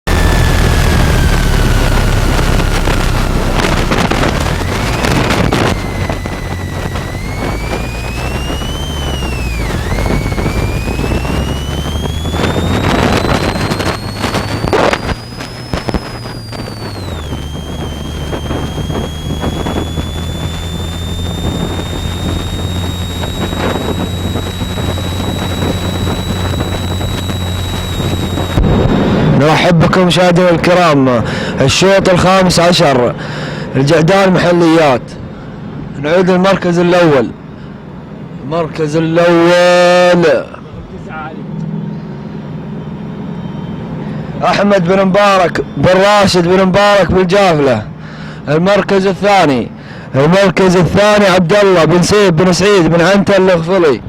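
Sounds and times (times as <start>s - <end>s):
vehicle high whine: 0.0s - 54.0s
steady low hum: 0.1s - 54.0s
wind buffeting microphone: 0.2s - 29.4s.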